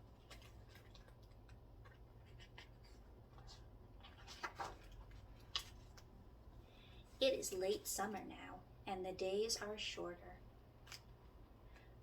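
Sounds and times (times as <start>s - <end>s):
low steady hum: 0.0s - 12.0s
paper pages turning: 0.1s - 6.1s.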